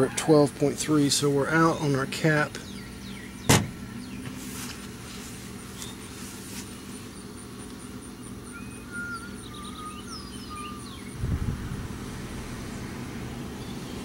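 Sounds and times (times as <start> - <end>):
steady low hum: 0.0 - 14.0
small birds chirping: 1.0 - 14.0
short low rumble: 11.2 - 13.8.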